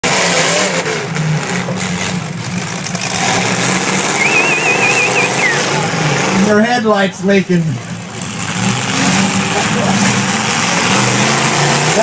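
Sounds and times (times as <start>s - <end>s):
truck engines running: 0.0s - 12.0s
high warbling whistle: 4.2s - 5.6s.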